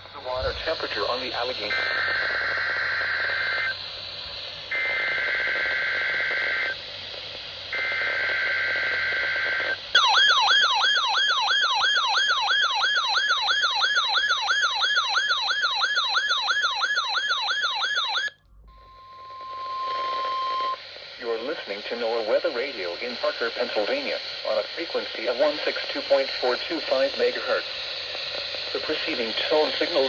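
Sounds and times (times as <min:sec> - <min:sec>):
sweeping electronic alert tone: 0:17.2 - 0:20.8.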